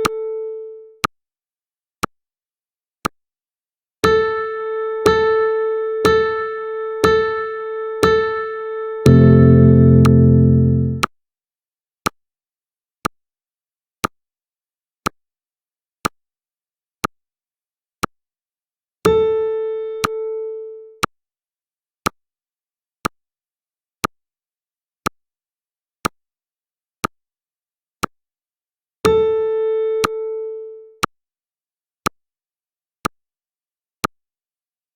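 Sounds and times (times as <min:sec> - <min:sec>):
timer ticking: 0:09.0 - 0:11.1
low buzzing tone: 0:09.1 - 0:11.0
pitched chime: 0:09.1 - 0:11.0.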